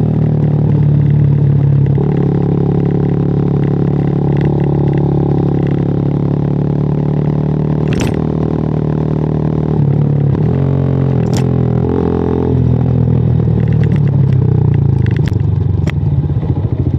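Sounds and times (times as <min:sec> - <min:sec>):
motorcycle engine running: 0:00.0 - 0:16.9
sharp clicks: 0:07.8 - 0:08.2, 0:11.2 - 0:11.6, 0:13.6 - 0:16.0.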